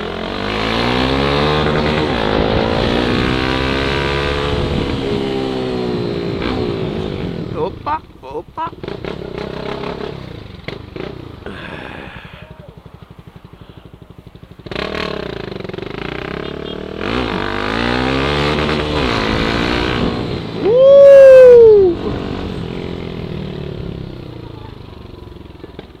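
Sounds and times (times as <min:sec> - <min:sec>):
motorcycle engine revving: 0:00.0 - 0:26.0
loud tone sliding downward: 0:20.6 - 0:22.1.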